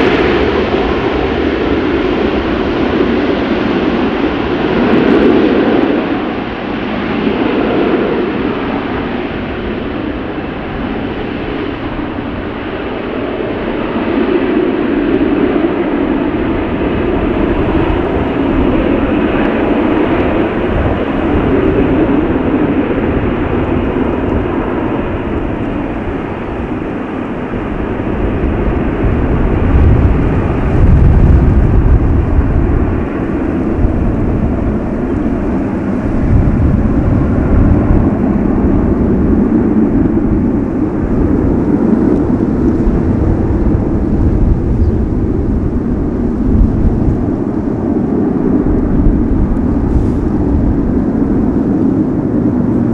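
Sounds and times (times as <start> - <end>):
jet engines running: 0.0 - 52.9
low rumble: 27.7 - 52.9.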